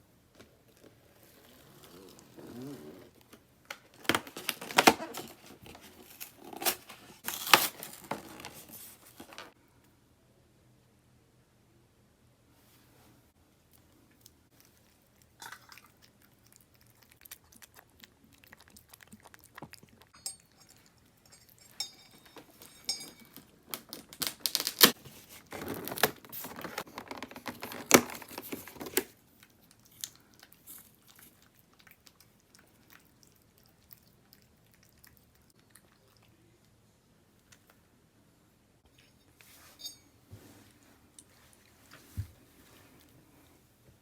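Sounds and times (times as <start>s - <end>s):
packaging rustling: 3.8s - 9.6s, 23.7s - 29.1s
packaging ripping and crinkling: 3.9s - 9.5s, 23.7s - 29.2s.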